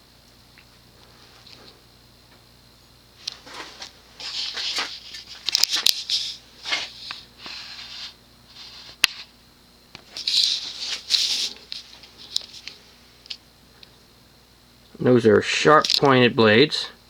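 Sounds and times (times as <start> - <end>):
handling rustling: 3.2 - 7.2.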